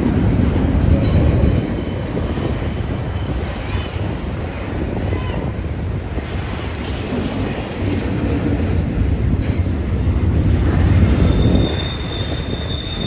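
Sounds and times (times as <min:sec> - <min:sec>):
train wheels rumbling on rail: 0:00.0 - 0:13.0
high wheel squeal: 0:10.9 - 0:13.0.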